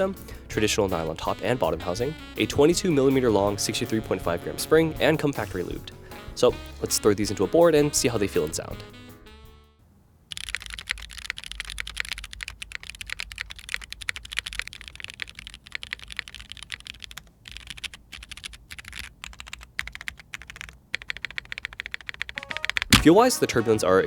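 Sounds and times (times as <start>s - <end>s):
fast typing on mechanical keyboard: 10.3s - 23.2s.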